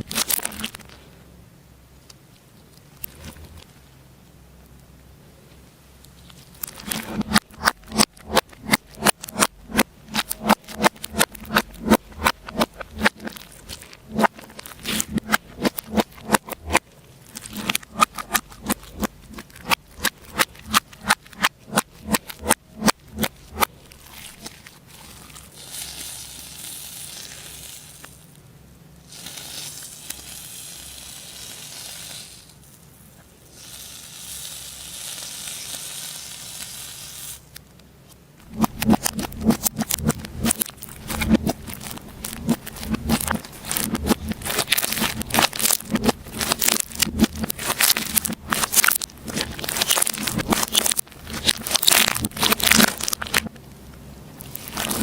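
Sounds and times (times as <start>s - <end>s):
slime crackling hiss: 6.4s - 28.3s, 29.1s - 37.6s, 38.4s - 53.5s
slime squishing with wet pops: 38.4s - 53.5s.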